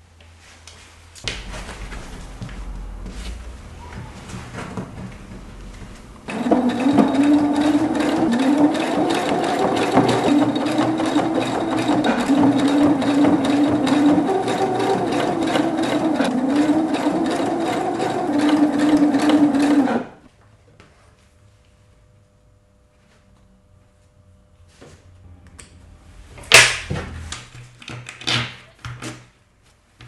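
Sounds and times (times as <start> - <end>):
sewing machine running: 3.9 - 20.3.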